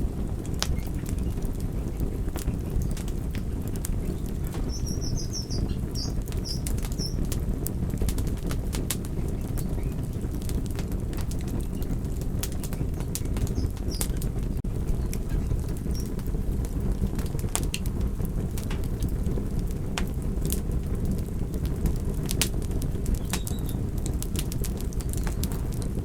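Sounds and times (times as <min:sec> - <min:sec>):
fire crackling and popping: 0:00.0 - 0:26.0
fire rumbling in a fireplace: 0:00.0 - 0:26.0.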